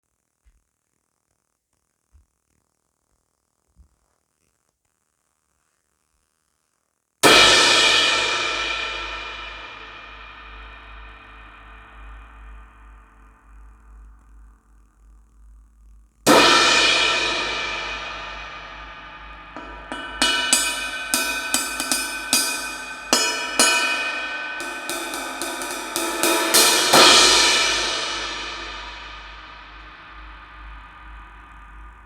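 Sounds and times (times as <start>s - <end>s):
quick stick strikes on cymbal: 7.2s - 14.3s, 16.3s - 32.0s
crash cymbal ringing: 7.2s - 14.6s, 16.3s - 32.0s.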